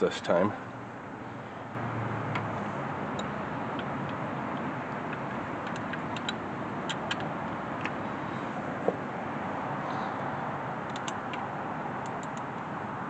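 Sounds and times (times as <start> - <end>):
light metallic clicks: 10.9 - 11.4.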